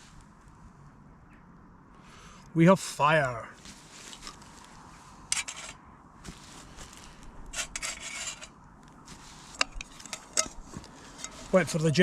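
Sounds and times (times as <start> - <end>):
rubbing and scraping of gear: 3.6 - 12.0.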